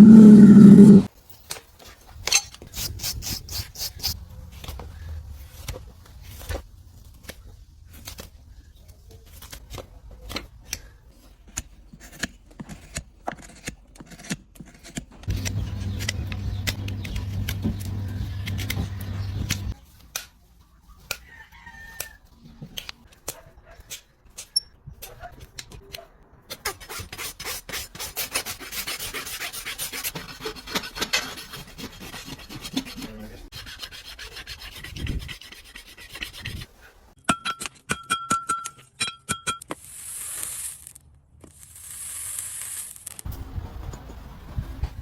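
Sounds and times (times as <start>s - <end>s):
bird calling: 0.0s - 1.1s
hoof scraping and clicking strokes: 11.2s - 19.8s, 26.6s - 37.2s
low steady hum: 15.3s - 19.7s.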